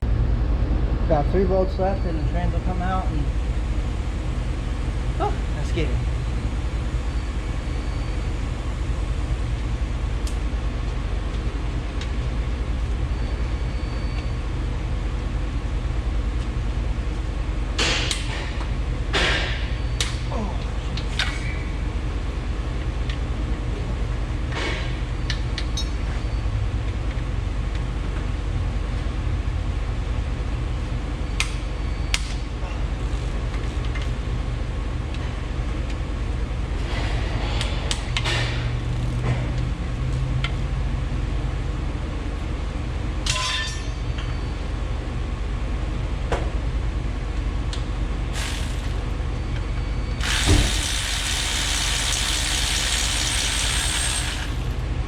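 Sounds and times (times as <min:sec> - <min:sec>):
steady low hum: 0:00.0 - 0:25.3, 0:26.7 - 0:55.0
loud hiss: 0:50.2 - 0:54.7.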